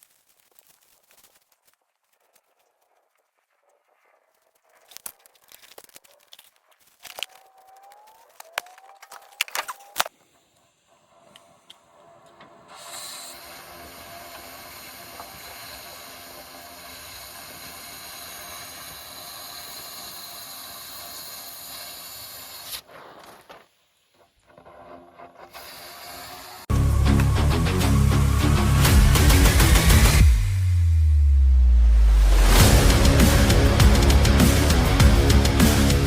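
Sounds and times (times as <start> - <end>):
steady hissing: 10.1 - 24.5.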